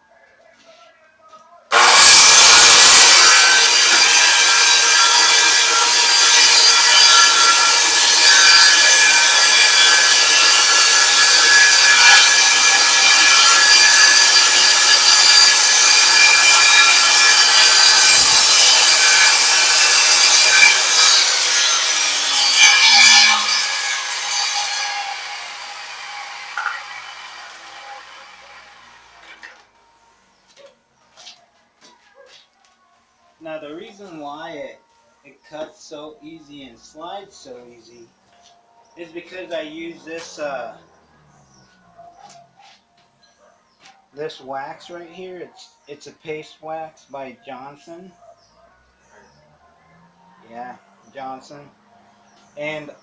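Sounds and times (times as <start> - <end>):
circular saw cutting wood: 1.7 - 29.7, 39.0 - 41.6.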